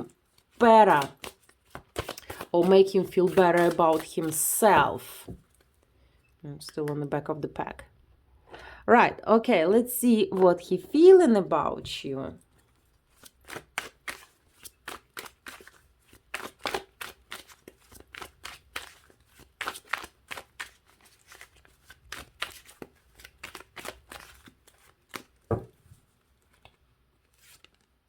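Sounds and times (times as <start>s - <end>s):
cards being shuffled: 0.0s - 5.7s, 13.1s - 25.7s, 26.4s - 28.0s.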